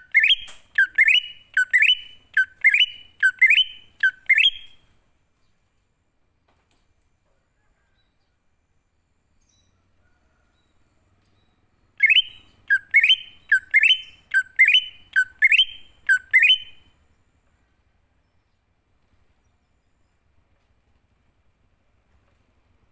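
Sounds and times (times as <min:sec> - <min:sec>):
bird calling sharp rising notes: 0:00.0 - 0:04.9, 0:12.0 - 0:16.9.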